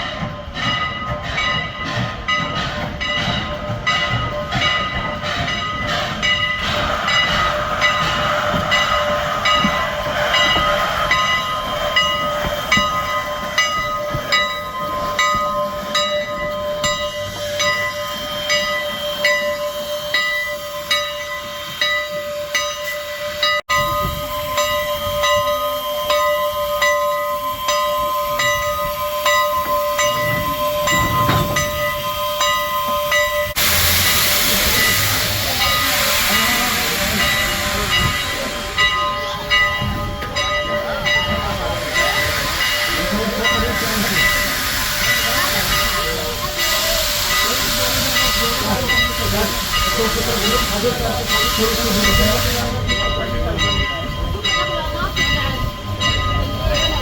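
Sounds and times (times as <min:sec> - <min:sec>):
steam hiss: 0:00.0 - 0:57.0
train wheels clicking over rail joints: 0:00.0 - 0:57.0.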